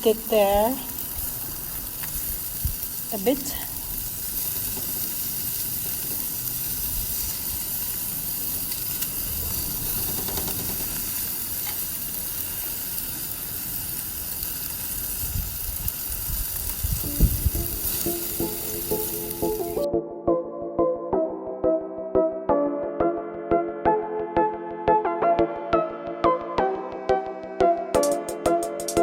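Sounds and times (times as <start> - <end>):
meat sizzling on a grill: 0.0 - 19.9
music: 17.0 - 29.0.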